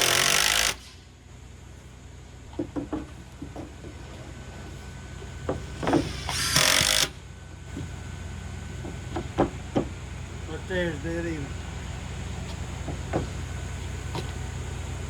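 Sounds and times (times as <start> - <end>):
power drill driving screw: 0.0 - 1.0, 5.8 - 7.2
lumber knocking: 2.5 - 4.4, 5.2 - 8.0, 8.8 - 10.0, 12.5 - 14.4.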